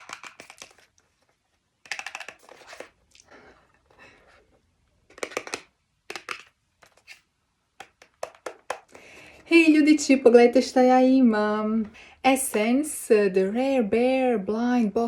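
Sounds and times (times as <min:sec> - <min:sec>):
packaging crinkling and clicking: 0:00.0 - 0:01.0, 0:01.8 - 0:03.2.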